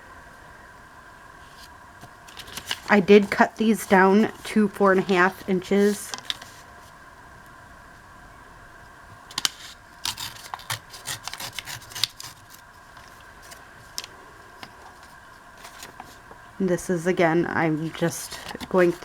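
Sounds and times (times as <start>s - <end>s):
faint steady hum: 0.0s - 19.0s
paper rustling and tapping: 4.8s - 6.6s, 17.8s - 19.0s.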